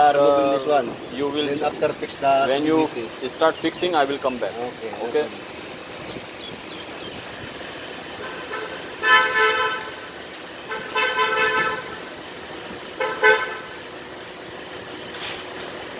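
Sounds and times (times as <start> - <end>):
vehicle horn honking: 8.1 - 12.2, 12.9 - 13.9.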